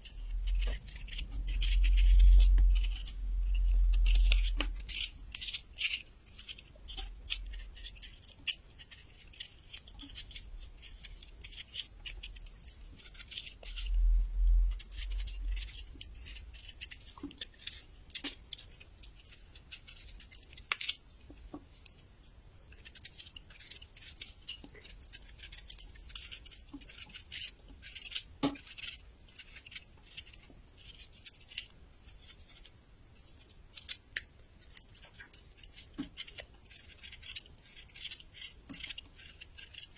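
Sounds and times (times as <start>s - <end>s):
low dull rumble: 0.0s - 4.9s, 13.8s - 16.2s
crunching and chewing ginger: 0.0s - 39.9s.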